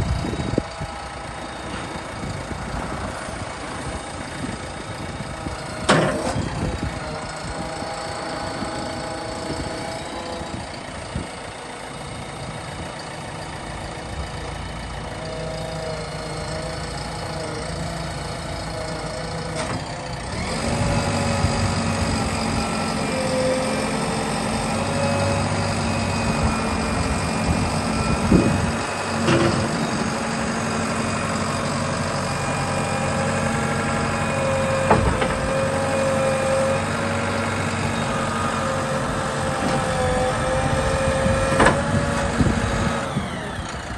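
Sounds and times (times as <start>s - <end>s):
diesel engine revving: 0.0s - 43.9s
metal clunks: 5.8s - 6.5s.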